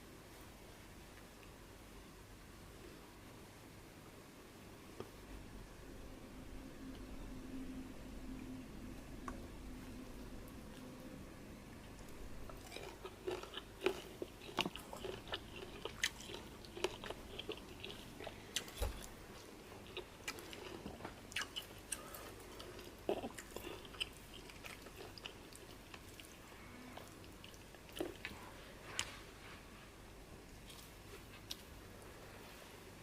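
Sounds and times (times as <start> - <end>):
man chewing and eating: 8.9 - 26.4, 27.0 - 28.4.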